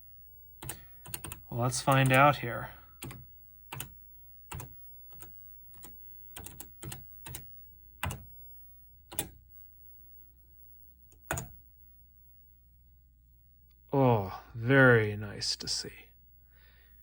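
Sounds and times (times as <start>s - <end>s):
faint low hum: 0.0s - 17.0s
keyboard keystrokes: 0.6s - 2.2s, 4.5s - 8.3s, 9.1s - 9.4s, 11.1s - 11.6s.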